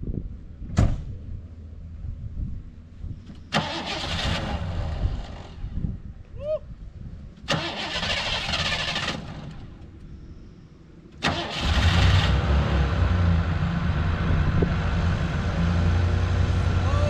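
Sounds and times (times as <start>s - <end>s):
car starter cranking: 3.4s - 5.5s, 7.4s - 9.9s, 11.2s - 12.6s.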